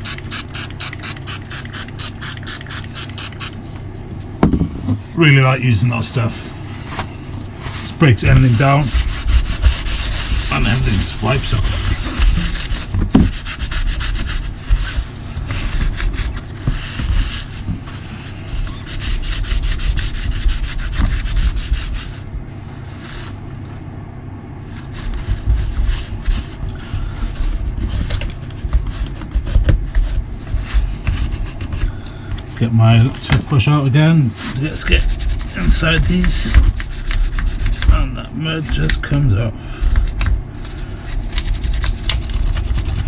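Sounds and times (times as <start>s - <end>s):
rubbing and scrubbing strokes: 7.5s - 23.4s, 24.6s - 32.0s, 34.3s - 38.9s, 40.0s - 43.0s.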